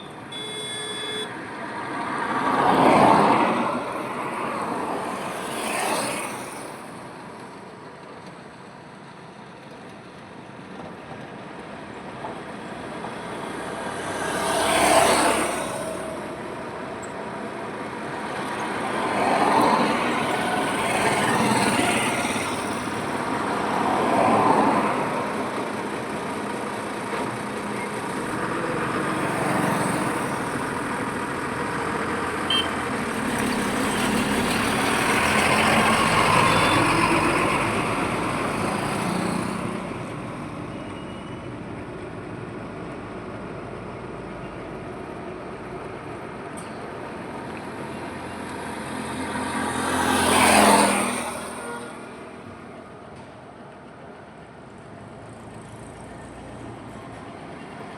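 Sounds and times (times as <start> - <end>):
vehicles passing: 0.0 - 9.0, 11.7 - 57.9
steady road noise: 0.0 - 57.9.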